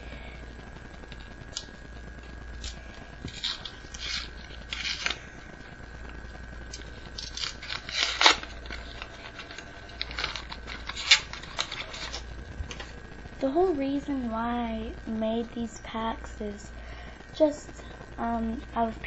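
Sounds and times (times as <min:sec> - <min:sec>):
paper tearing and rustling: 0:02.6 - 0:05.2, 0:06.7 - 0:12.9.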